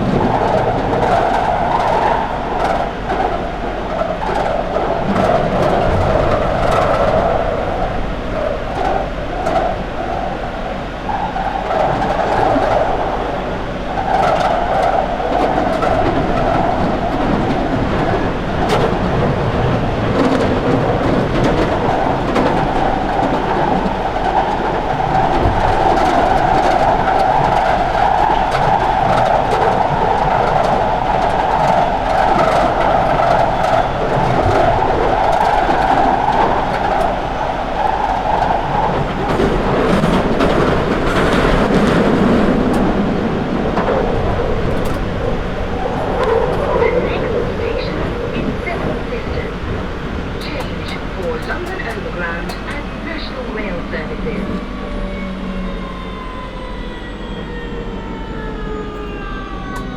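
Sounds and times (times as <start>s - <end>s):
train rumbling through tunnel: 0.0s - 59.9s.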